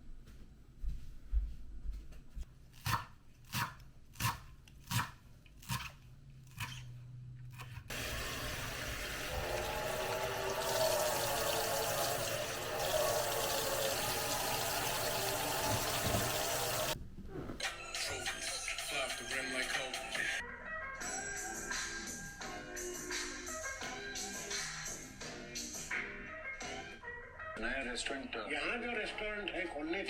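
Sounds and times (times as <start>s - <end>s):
water running into a sink: 7.9s - 17.0s.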